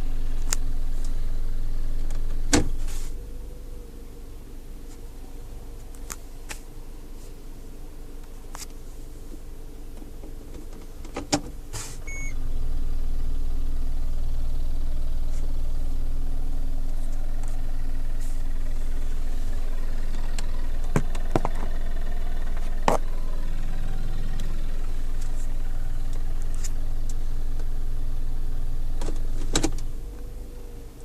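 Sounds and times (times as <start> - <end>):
car engine starting and idling: 0.0 - 31.0
short beep: 12.0 - 12.4.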